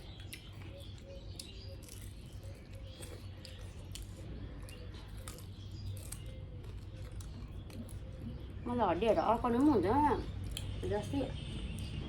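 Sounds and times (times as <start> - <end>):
person chewing fried chicken: 0.0 - 8.5.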